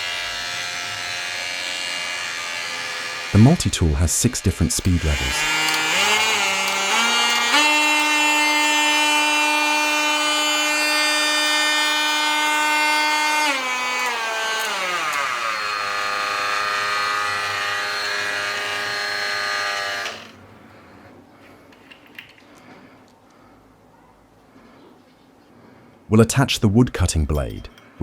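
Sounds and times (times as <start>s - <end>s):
oscillating multi-tool motor whine: 0.0s - 20.4s.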